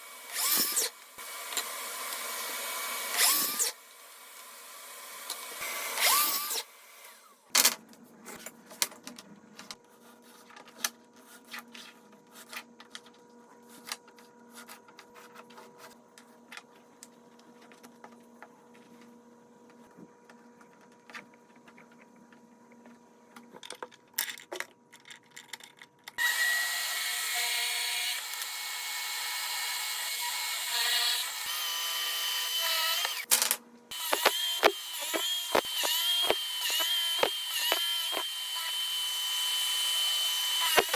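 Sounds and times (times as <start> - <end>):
power tool whining: 0.0 - 3.8, 4.6 - 7.3, 26.2 - 33.3, 33.9 - 40.9.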